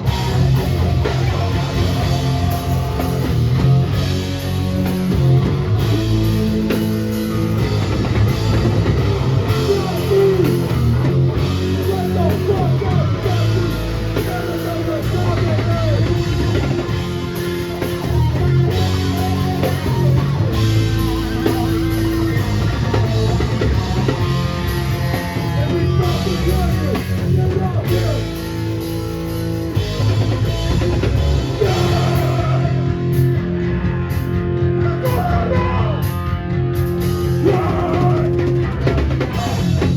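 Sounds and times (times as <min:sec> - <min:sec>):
shouted vocals: 0:00.0 - 0:04.0, 0:08.8 - 0:17.0, 0:17.9 - 0:28.4, 0:31.4 - 0:34.1, 0:34.8 - 0:36.3, 0:37.2 - 0:39.9
bass: 0:00.0 - 0:39.9
distorted guitars: 0:00.0 - 0:39.9.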